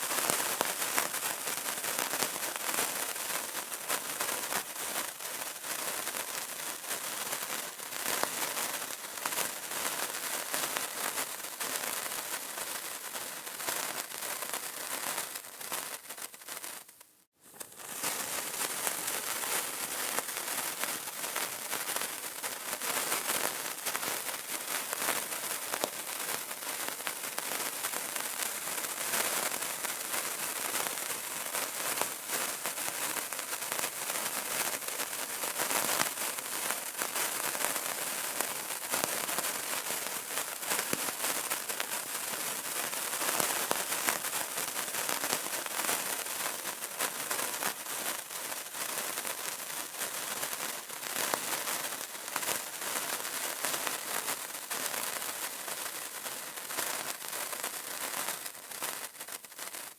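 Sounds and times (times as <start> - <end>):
candle crackling: 3.3 - 45.6.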